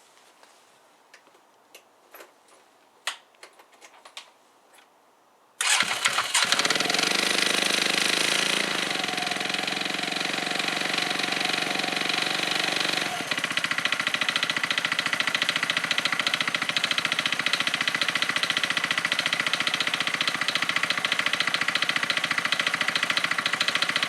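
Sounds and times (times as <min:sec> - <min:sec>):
scooter engine starting and running: 0:05.6 - 0:24.0.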